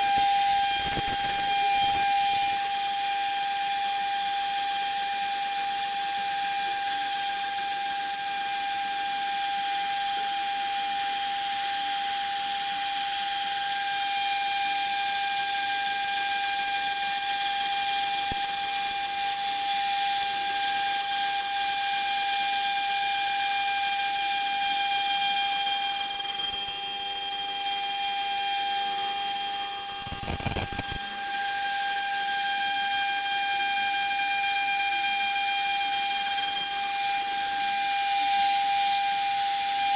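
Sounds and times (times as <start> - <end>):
router spindle whine: 0.0 - 39.9.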